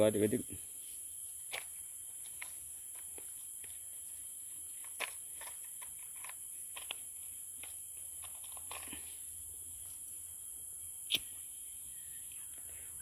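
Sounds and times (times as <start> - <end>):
small clicks: 4.8 - 7.0
high-pitched insect drone: 8.9 - 13.0.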